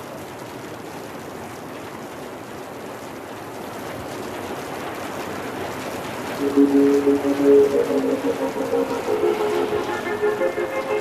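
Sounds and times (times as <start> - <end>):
steady rushing noise: 6.4 - 11.0.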